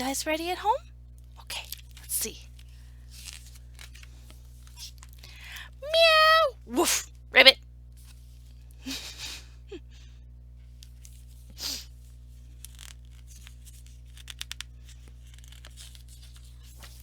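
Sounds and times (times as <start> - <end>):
paper pages rustling: 1.2 - 5.2, 7.9 - 8.7, 10.6 - 17.0.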